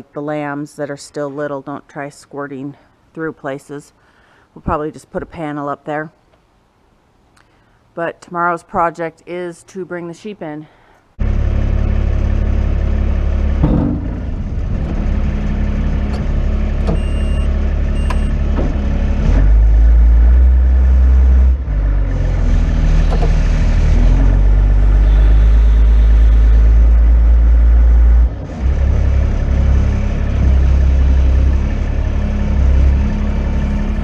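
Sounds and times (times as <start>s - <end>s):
tractor engine running: 11.2s - 34.0s.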